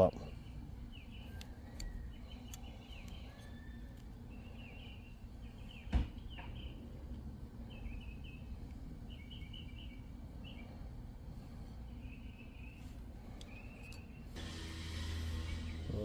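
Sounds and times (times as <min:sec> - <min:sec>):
birds chirping: 0:00.0 - 0:16.0
steady low rumble: 0:04.1 - 0:16.0.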